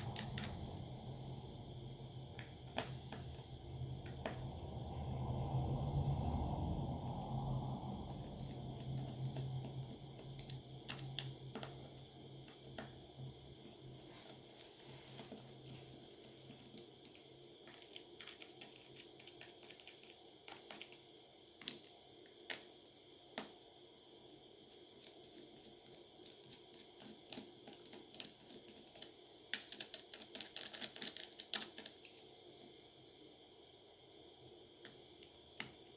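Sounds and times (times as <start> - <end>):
low hum: 0.0 - 14.0.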